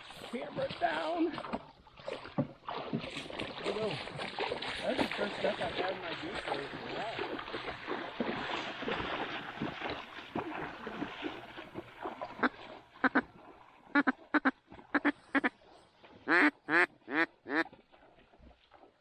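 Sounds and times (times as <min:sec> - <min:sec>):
duck quacking: 0:12.4 - 0:13.2, 0:14.0 - 0:15.5, 0:16.3 - 0:17.6.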